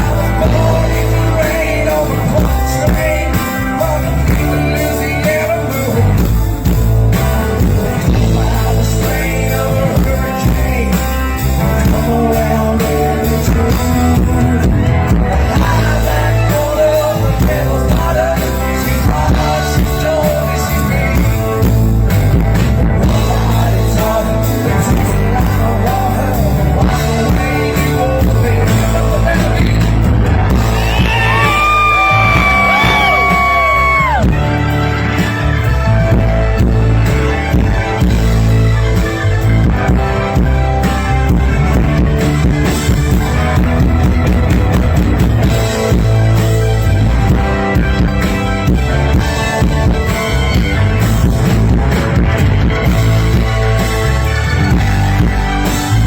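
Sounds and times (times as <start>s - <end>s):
rock band playing: 0.0s - 56.0s.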